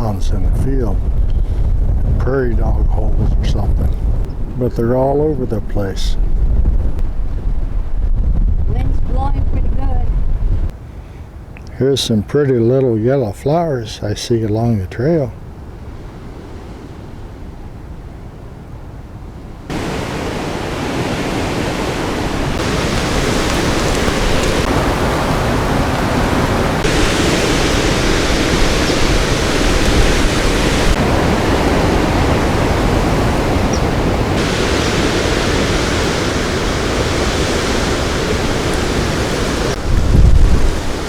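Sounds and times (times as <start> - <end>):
strong wind rushing: 0.0 - 10.8, 19.7 - 41.0
wind gust buffeting microphone: 0.0 - 10.8, 19.7 - 41.0.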